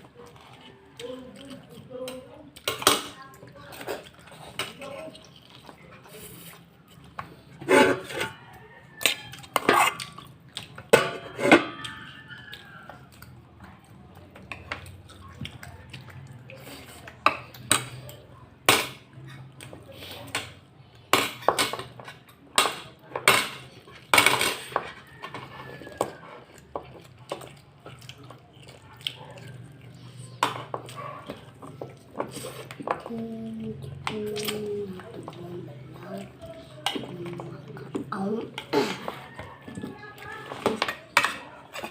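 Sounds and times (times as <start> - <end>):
cutlery clinking on a plate: 9.0 - 11.9, 21.2 - 27.5, 40.5 - 41.9.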